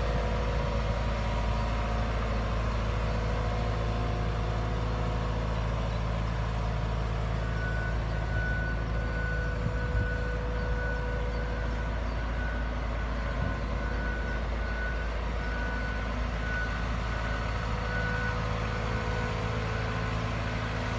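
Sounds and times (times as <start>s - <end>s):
excavator diesel engine running: 0.0s - 20.9s
travel alarm beeping: 7.3s - 18.4s.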